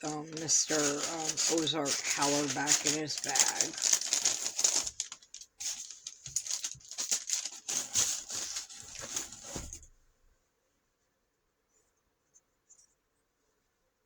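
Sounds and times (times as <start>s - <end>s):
bag rustling and crinkling: 0.0s - 9.9s.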